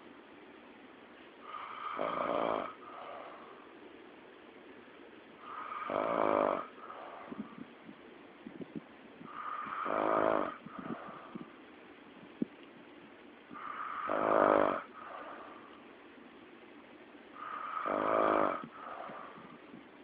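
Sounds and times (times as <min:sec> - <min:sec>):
man snoring loudly: 0:01.5 - 0:03.3, 0:05.5 - 0:06.8, 0:09.3 - 0:11.0, 0:13.6 - 0:15.4, 0:17.4 - 0:19.3.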